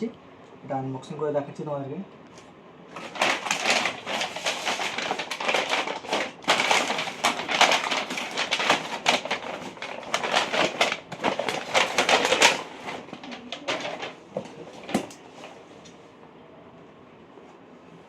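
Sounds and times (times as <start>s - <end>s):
packaging crackling and rustling: 2.9s - 15.6s.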